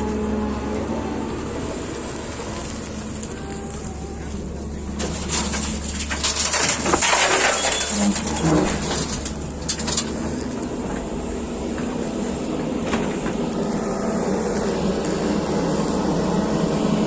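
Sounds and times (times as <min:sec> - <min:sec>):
diesel engine running: 0:00.0 - 0:17.0
noisy scraping: 0:00.0 - 0:17.0
dove cooing: 0:02.6 - 0:05.4.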